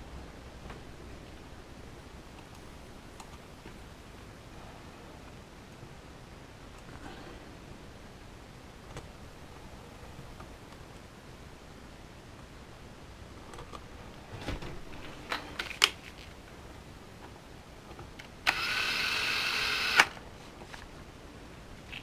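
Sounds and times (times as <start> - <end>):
small electric motor whirring: 18.5 - 20.1.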